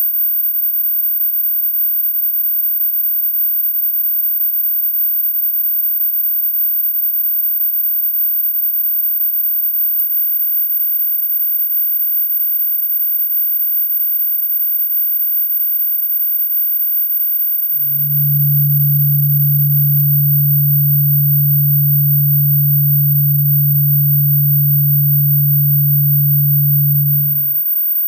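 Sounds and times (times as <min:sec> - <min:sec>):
loud steady low tone: 0:17.8 - 0:27.6
very high whistle tone: 0:17.8 - 0:27.6.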